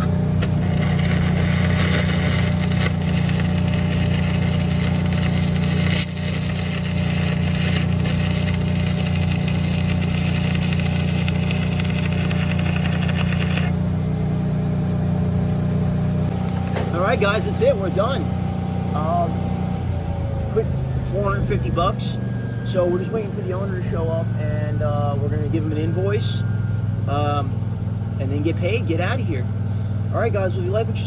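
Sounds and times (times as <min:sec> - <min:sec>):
welding arc crackling and sizzling: 0:00.0 - 0:14.4
engine drone: 0:00.0 - 0:31.0.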